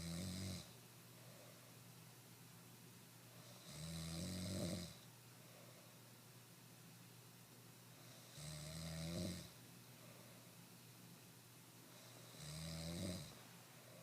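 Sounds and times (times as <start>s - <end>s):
person snoring: 0.0s - 0.7s, 3.4s - 5.0s, 8.1s - 9.5s, 12.0s - 13.4s.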